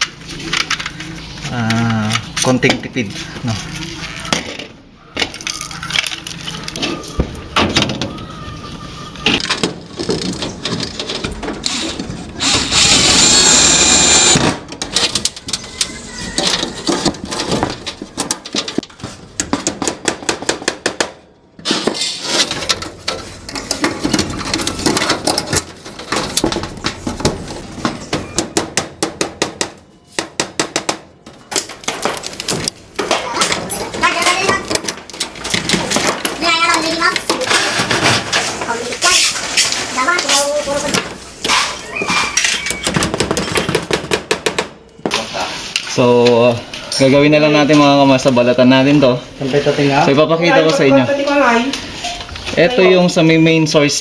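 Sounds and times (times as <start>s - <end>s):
power tool running: 12.4s - 14.4s.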